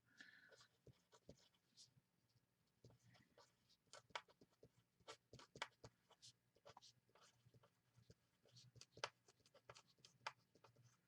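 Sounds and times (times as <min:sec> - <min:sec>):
pen scratching and tapping: 0:02.8 - 0:11.0.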